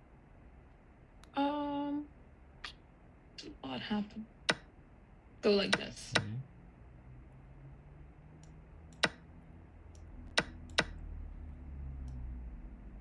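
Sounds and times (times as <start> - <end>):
faint low hum: 0.0 - 13.0
sharp clicks: 8.4 - 9.2, 9.9 - 11.0.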